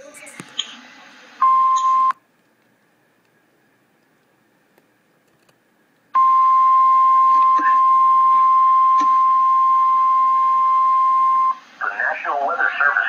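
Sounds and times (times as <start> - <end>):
single-pitch warning alarm tone: 6.2 - 11.6.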